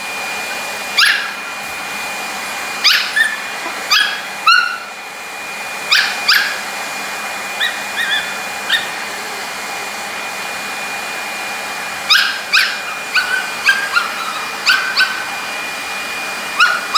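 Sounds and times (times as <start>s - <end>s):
hair dryer whining: 0.0s - 16.9s
dog yipping and barking: 0.9s - 1.5s, 2.7s - 5.0s, 5.8s - 9.0s, 12.0s - 15.8s, 16.4s - 16.9s.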